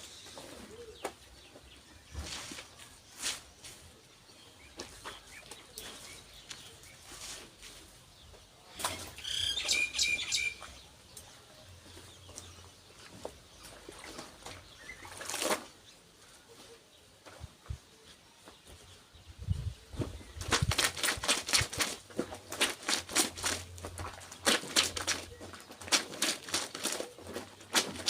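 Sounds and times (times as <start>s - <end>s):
bird chirps: 8.2s - 16.8s.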